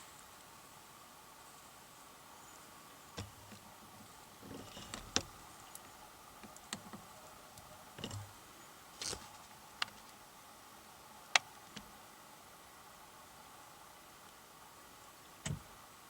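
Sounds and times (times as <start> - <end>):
sharp clicks and light knocks: 4.4 - 8.3, 15.4 - 15.7.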